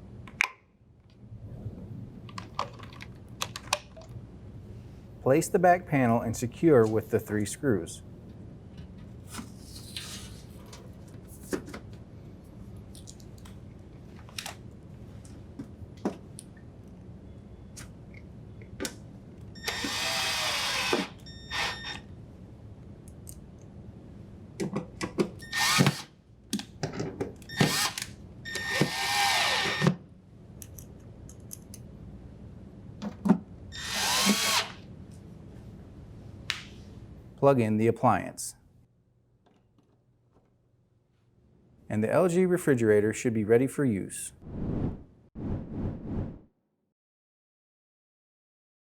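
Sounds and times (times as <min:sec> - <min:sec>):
drill driver motor whine: 0:19.6 - 0:22.0, 0:25.4 - 0:26.0, 0:27.5 - 0:29.9, 0:33.8 - 0:34.7
small clicks and handling knocks: 0:30.6 - 0:31.8, 0:39.4 - 0:40.6.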